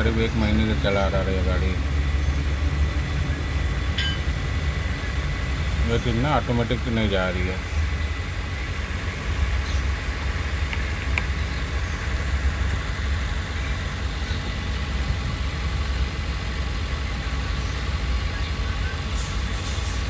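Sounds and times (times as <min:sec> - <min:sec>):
van engine idling: 0:00.0 - 0:20.0.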